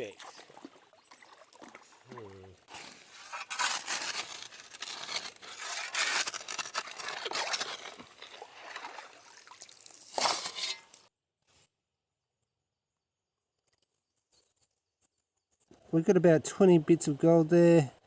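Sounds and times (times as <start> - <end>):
gravel scraping in a pan with water: 2.6 - 11.1.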